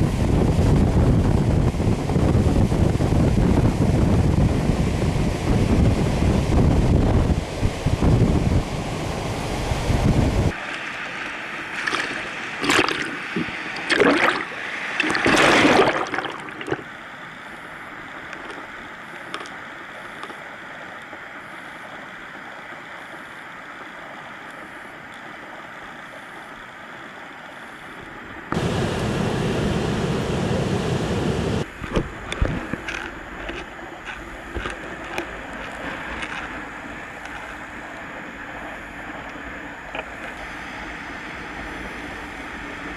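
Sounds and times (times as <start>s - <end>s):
wind buffeting microphone: 0.0s - 10.6s, 28.5s - 42.9s
waves crashing: 0.0s - 20.4s, 28.0s - 42.9s.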